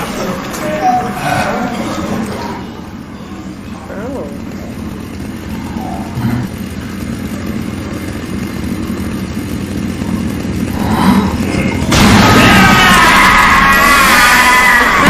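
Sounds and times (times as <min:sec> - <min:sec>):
chainsaw engine running: 0:01.4 - 0:15.0.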